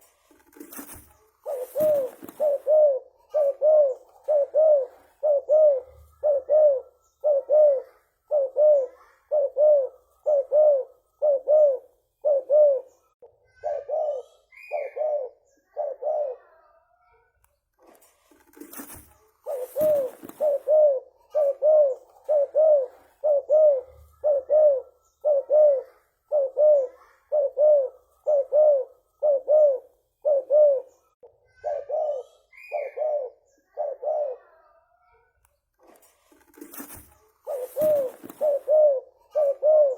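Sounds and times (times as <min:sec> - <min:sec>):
brief rustle: 0:00.0 - 0:02.6, 0:17.7 - 0:20.7, 0:35.7 - 0:38.8
dove cooing: 0:00.0 - 0:16.6, 0:18.4 - 0:34.7, 0:36.4 - 0:39.9.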